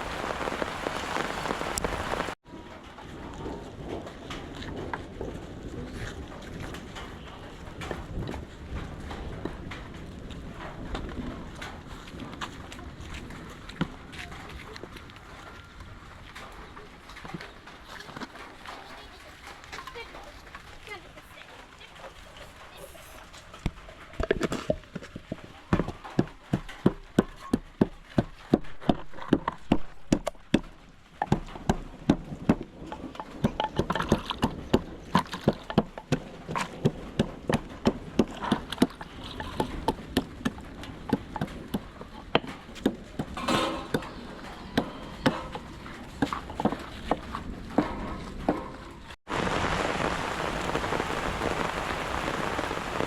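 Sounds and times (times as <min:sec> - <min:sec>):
sharp knocks: 0:25.8 - 0:49.2.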